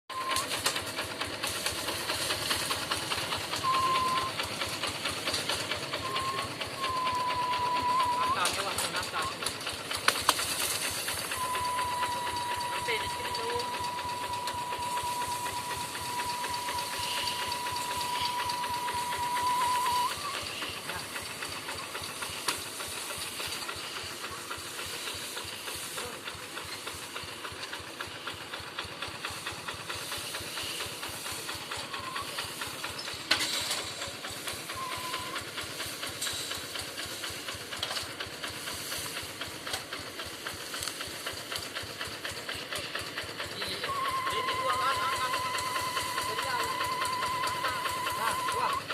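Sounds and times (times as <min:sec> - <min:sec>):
diesel tractor engine knocking: 0:00.1 - 0:48.9
hissing exhaust: 0:00.1 - 0:48.9
steady high tone: 0:11.3 - 0:20.5, 0:43.9 - 0:48.8.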